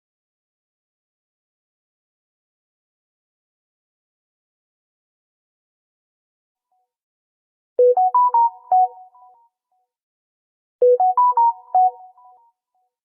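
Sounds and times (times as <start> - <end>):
phone notification tone: 7.8 - 9.3, 10.8 - 12.2.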